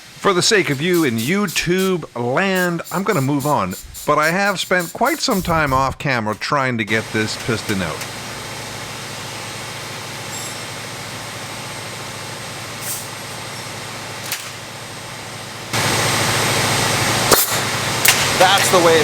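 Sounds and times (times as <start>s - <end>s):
compressed air hissing: 0.0s - 5.9s
steady low hum: 0.0s - 6.0s.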